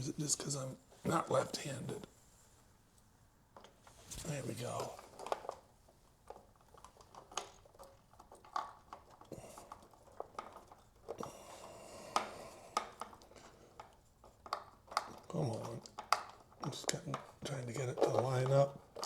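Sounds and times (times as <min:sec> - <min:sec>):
soft rustling: 0:00.0 - 0:07.2.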